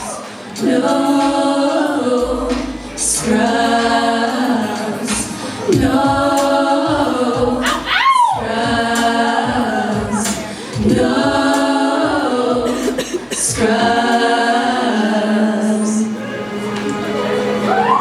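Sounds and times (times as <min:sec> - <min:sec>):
women singing a cappella: 0:00.0 - 0:18.0.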